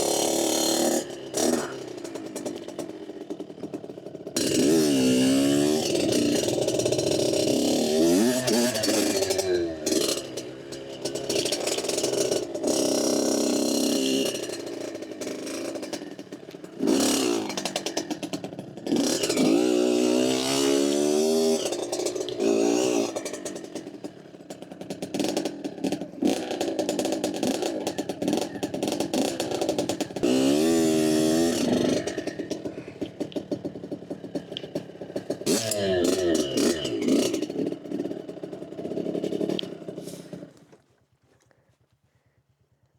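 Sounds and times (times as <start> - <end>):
dirt bike engine revving: 0.0 - 40.8.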